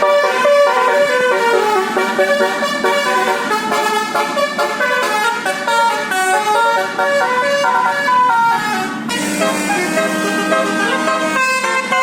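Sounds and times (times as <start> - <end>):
bus musical horn playing melody: 0.0 - 12.0.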